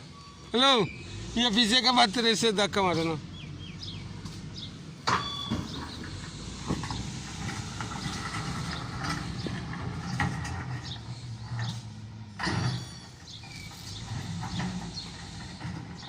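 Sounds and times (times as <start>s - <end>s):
diesel engine running: 0.0s - 16.0s
metal clanks and knocks: 5.0s - 16.0s.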